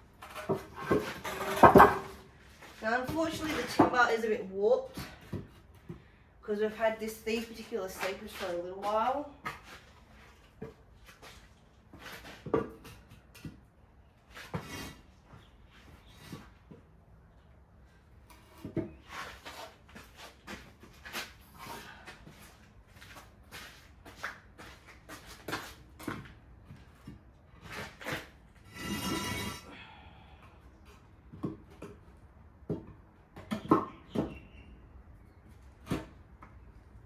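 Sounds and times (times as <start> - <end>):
wooden knocks and clunks: 0.2 - 2.2.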